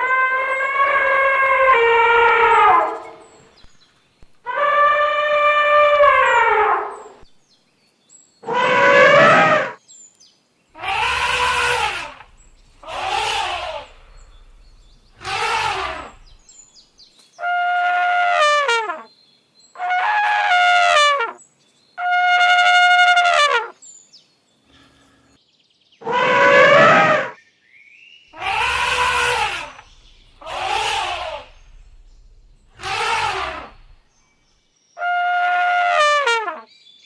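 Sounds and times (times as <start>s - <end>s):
elephants trumpeting: 0.0s - 3.4s, 4.4s - 7.2s, 8.4s - 9.8s, 10.8s - 16.5s, 26.0s - 27.4s, 28.4s - 34.2s.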